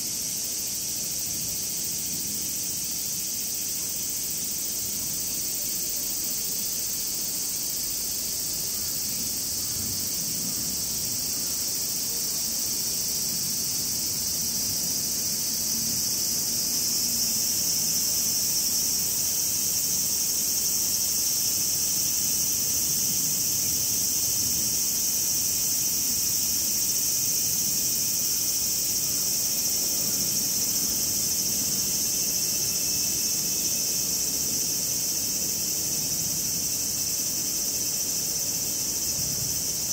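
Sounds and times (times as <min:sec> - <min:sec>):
cicadas calling: 0:00.0 - 0:39.9.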